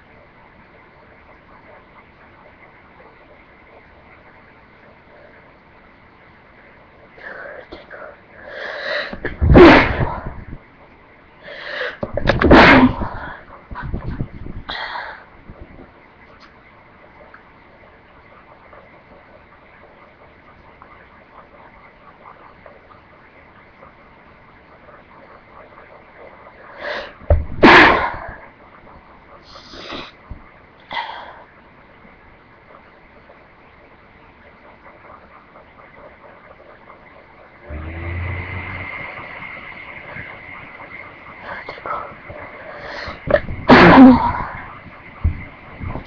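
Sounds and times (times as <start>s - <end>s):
in-breath: 7.2s - 9.2s, 11.4s - 12.0s, 14.7s - 15.3s, 26.7s - 27.2s, 29.4s - 30.2s, 30.9s - 31.6s, 41.4s - 43.2s.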